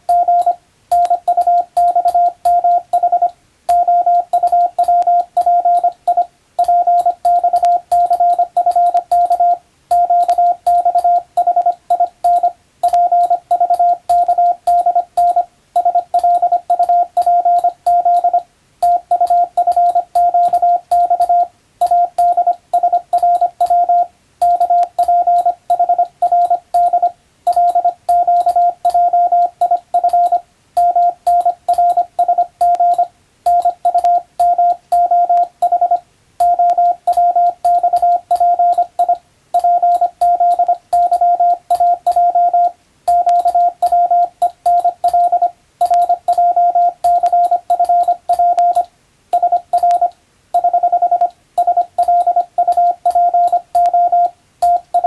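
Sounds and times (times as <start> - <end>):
morse code beeps: 0.0 - 55.0.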